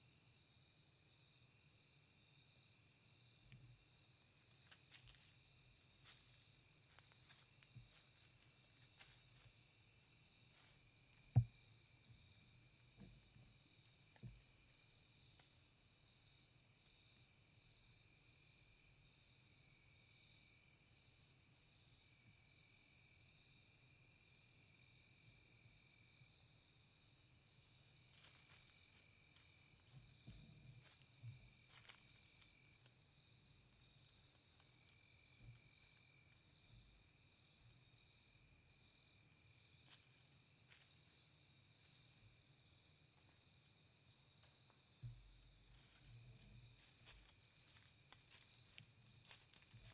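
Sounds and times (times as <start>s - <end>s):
insects trilling: 4.2s - 15.7s, 27.6s - 37.4s, 38.0s - 49.9s.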